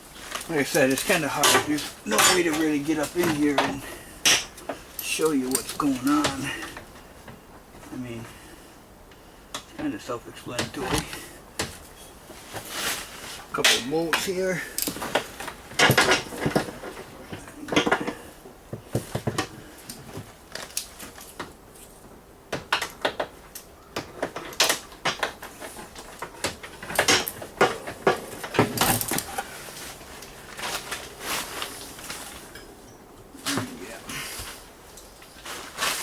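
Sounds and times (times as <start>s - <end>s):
hand tools clinking on metal: 0.4s - 6.8s.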